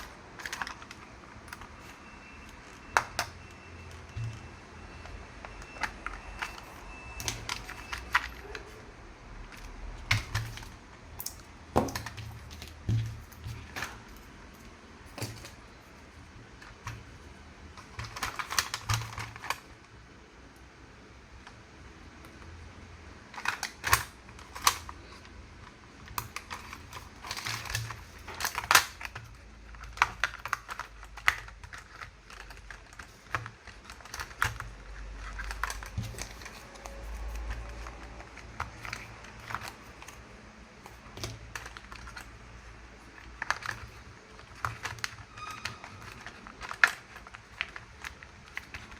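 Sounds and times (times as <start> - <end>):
hard plastic clicking: 23.3 - 48.9.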